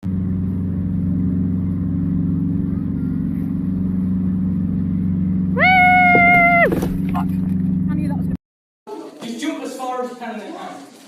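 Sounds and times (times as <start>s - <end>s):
motor humming: 0.1s - 8.4s
loud high tone: 5.6s - 6.7s.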